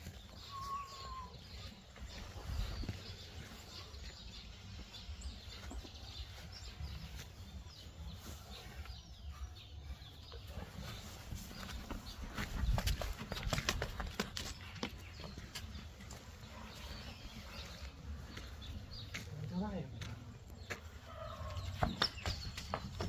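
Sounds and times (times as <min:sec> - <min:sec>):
faint bird chirps: 0:00.1 - 0:04.0.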